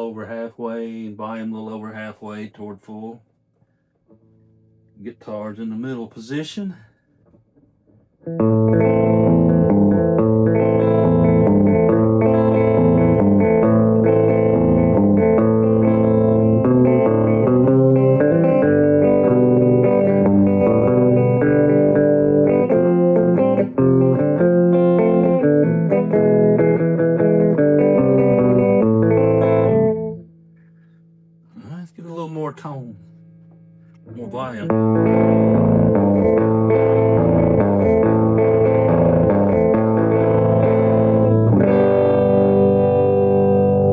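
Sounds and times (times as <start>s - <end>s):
electric guitar through tube amp: 8.2s - 30.9s, 32.7s - 43.9s
low amp hum: 8.3s - 43.9s.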